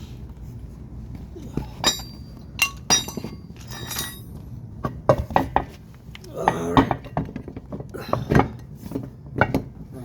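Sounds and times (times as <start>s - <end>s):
small metal parts clinking: 1.8s - 4.4s.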